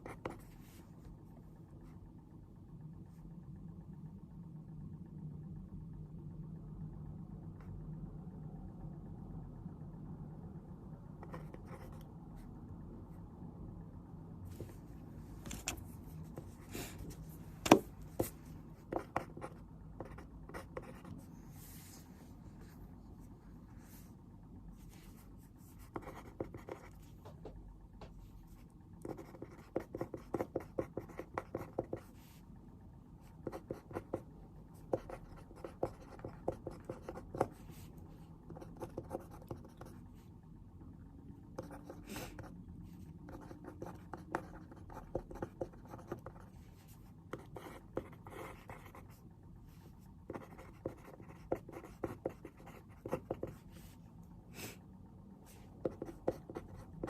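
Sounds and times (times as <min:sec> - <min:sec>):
pen scratching on paper: 0:00.0 - 0:00.6, 0:11.2 - 0:12.0, 0:17.7 - 0:21.2, 0:25.8 - 0:27.0, 0:29.0 - 0:32.1, 0:34.9 - 0:37.8, 0:38.5 - 0:40.0, 0:43.3 - 0:46.4, 0:47.0 - 0:49.2, 0:50.3 - 0:54.0, 0:55.8 - 0:57.0
low room hum: 0:00.0 - 0:57.0.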